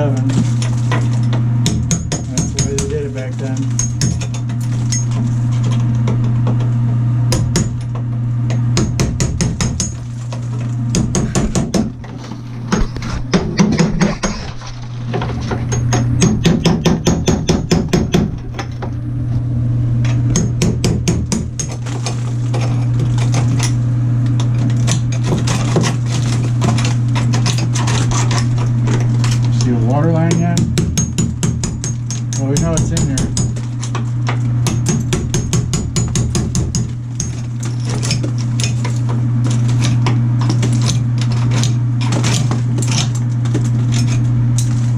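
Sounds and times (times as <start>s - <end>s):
steady low hum: 0.0s - 44.9s
hammer chipping tile: 0.4s - 6.6s, 8.5s - 10.1s, 10.9s - 12.1s, 12.7s - 18.4s, 20.3s - 23.4s, 24.6s - 29.3s, 30.1s - 34.0s, 34.6s - 44.2s.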